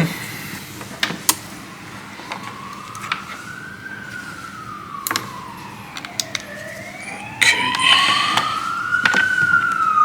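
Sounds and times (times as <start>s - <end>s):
siren wailing: 1.5s - 10.0s.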